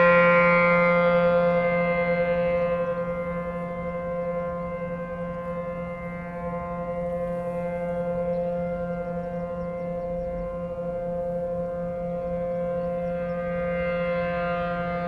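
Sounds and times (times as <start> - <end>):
warning siren steady tone: 0.0 - 15.0.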